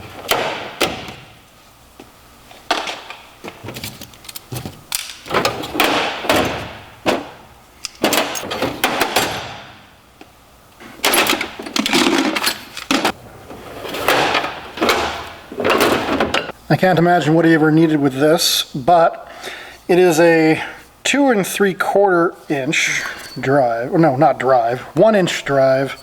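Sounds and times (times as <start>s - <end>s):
metal tools clinking in a drawer: 7.9s - 9.4s, 11.0s - 16.5s, 22.9s - 23.5s.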